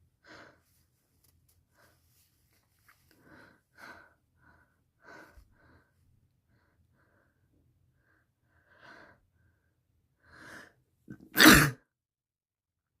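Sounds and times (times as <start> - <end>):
faint breaths: 0.1 - 10.8
loud short sneeze: 11.3 - 11.8.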